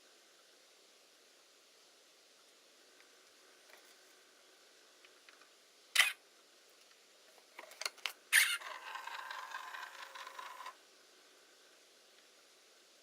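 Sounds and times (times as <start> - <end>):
squeaky tone: 8.4 - 8.8
winder motor running: 8.4 - 10.8.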